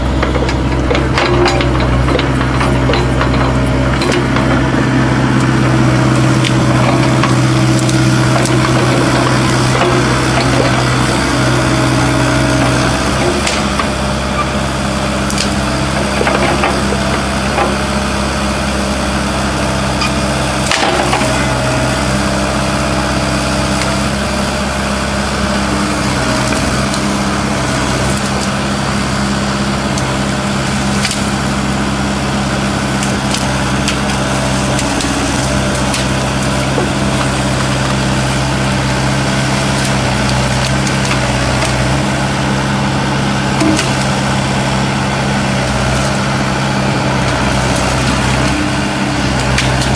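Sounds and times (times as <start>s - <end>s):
excavator diesel engine running: 0.0s - 49.9s
wood cracking and snapping: 0.4s - 14.2s, 15.2s - 17.8s, 32.9s - 42.1s, 47.1s - 49.9s.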